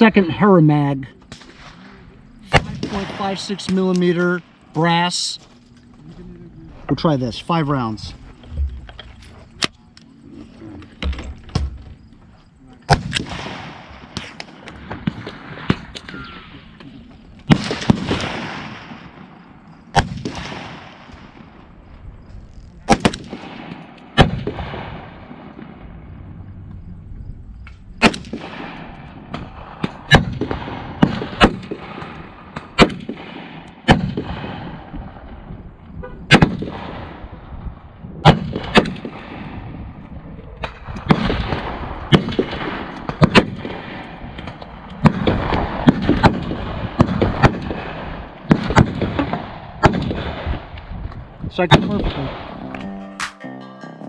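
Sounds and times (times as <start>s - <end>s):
rifle gunshots echoing: 1.2s - 5.4s, 28.0s - 34.8s.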